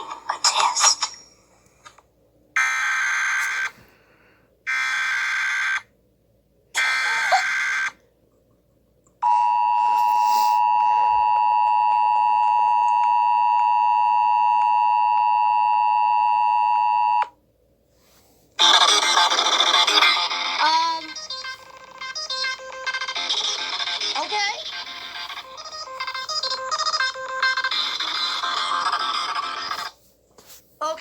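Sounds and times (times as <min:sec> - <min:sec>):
digital data tone bursts: 0:18.6 - 0:29.9.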